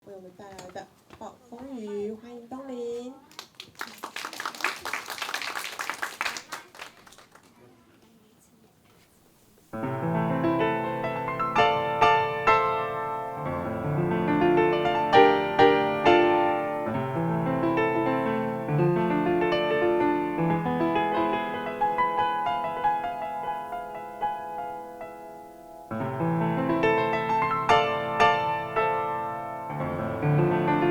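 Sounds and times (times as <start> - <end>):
solo piano lively piece: 9.7 - 30.9.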